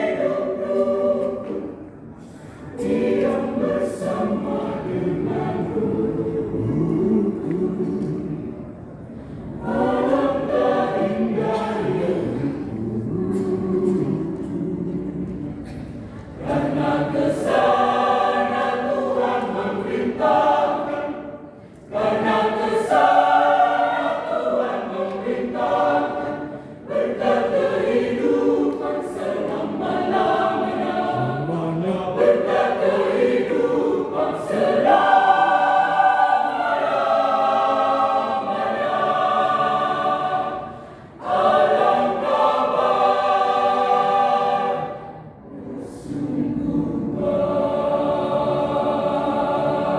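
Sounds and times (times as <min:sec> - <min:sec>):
choir singing: 0:00.0 - 0:49.9.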